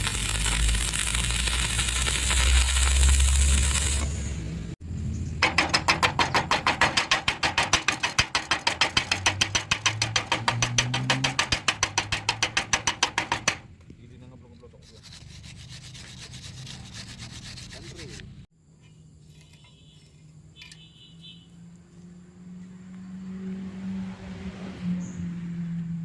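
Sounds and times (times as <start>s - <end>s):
fast scrubbing strokes: 5.9s - 13.6s, 14.8s - 18.2s.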